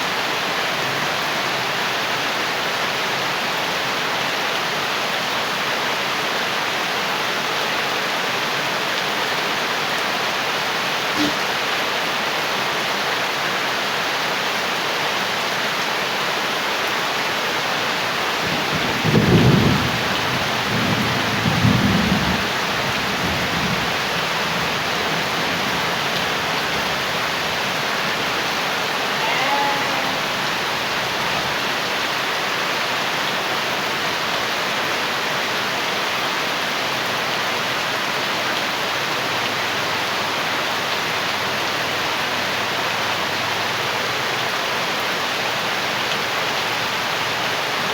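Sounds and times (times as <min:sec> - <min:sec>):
steady rain: 0:00.0 - 0:47.9
low rolls of thunder: 0:18.5 - 0:27.6.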